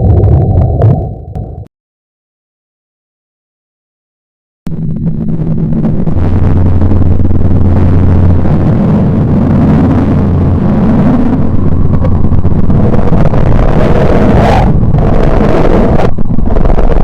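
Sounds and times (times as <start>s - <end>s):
low rumbling drone: 0.0s - 1.7s, 4.7s - 17.0s
steady low hum: 4.7s - 17.0s.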